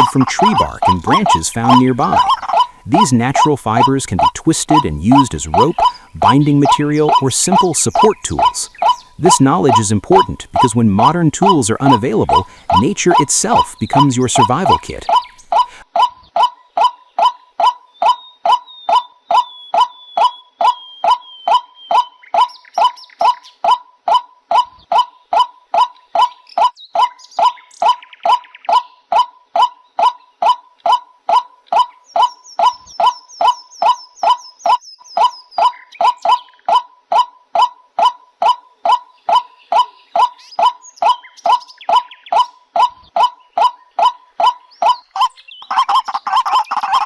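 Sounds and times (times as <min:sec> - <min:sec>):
waterhen honking call: 0:00.0 - 0:26.3, 0:38.0 - 0:47.0.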